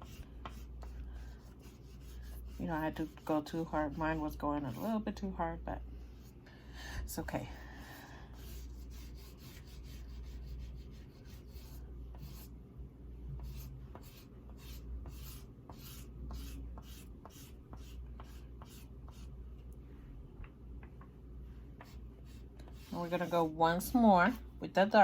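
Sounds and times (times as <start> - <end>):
oil pastel scratching on paper: 0.0 - 5.0, 8.4 - 12.5, 13.4 - 19.3, 21.8 - 23.6
low steady hum: 0.0 - 25.0.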